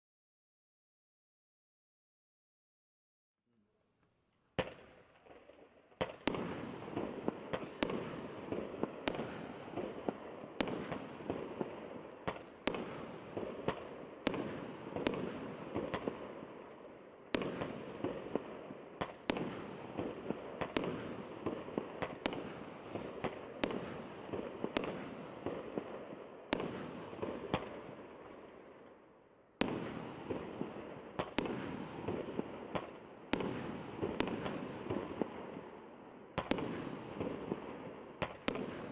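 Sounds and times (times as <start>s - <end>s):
crackling firework bursts: 4.6s - 16.5s
firework launch bangs: 7.5s - 8.3s.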